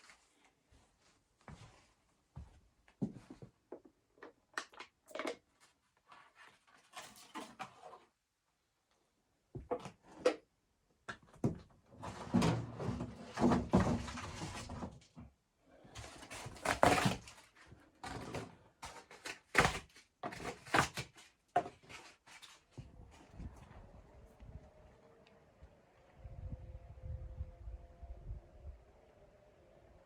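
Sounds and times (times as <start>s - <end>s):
scraping rustling handling noise: 16.0s - 23.9s.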